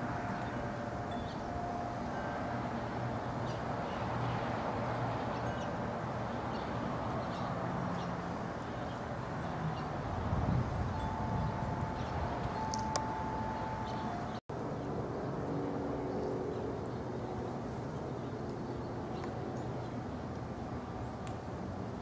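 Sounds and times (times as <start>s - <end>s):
outdoor background noise: 0.0s - 22.0s
ringing tones: 10.9s - 14.4s.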